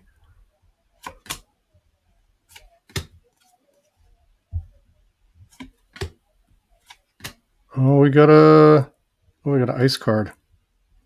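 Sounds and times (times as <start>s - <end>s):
sharp card snaps: 1.0s - 1.4s, 2.5s - 3.1s
cards being flipped: 1.0s - 1.5s, 2.4s - 3.6s, 5.5s - 6.2s, 6.8s - 7.4s.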